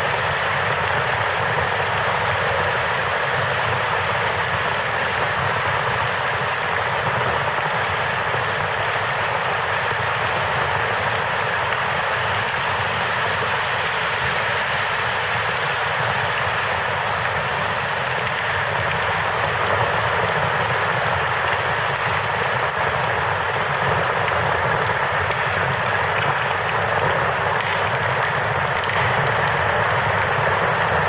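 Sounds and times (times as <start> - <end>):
campfire crackling: 16.4 - 31.0.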